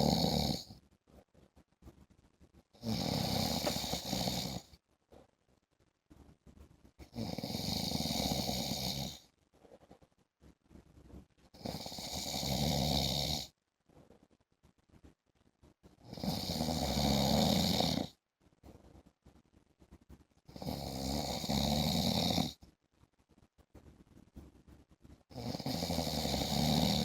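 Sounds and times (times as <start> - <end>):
man snoring: 0.0 - 0.7, 2.8 - 4.7, 7.1 - 9.2, 11.6 - 13.5, 16.1 - 18.1, 20.6 - 22.6, 25.3 - 27.0.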